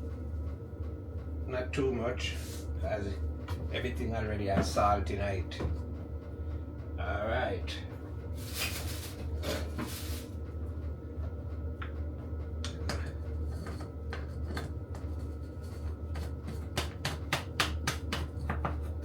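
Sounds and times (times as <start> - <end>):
low hum: 0.0 - 16.8
kitchen clicks and taps: 16.2 - 18.9.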